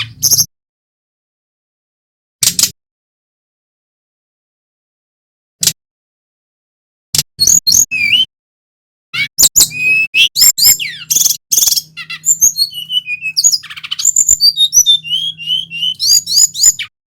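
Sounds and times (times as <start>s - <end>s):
flycatcher singing whistled song: 7.4s - 8.3s, 9.2s - 17.0s.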